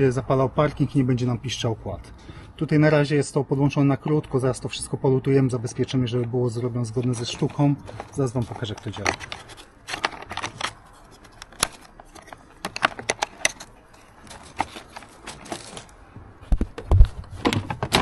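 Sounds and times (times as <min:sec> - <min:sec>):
hands handling plastic parts: 0:06.1 - 0:18.0.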